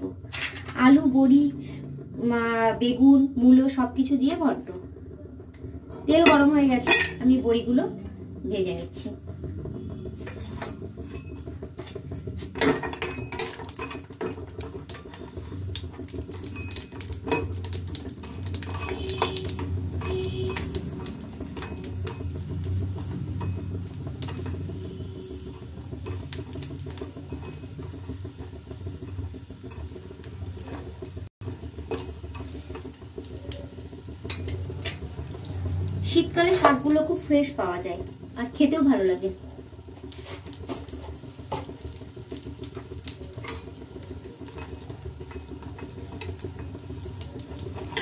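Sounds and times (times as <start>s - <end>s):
dumplings sizzling in oil: 0.0s - 48.0s
spatula scraping a pan: 9.7s - 14.3s, 40.0s - 41.8s.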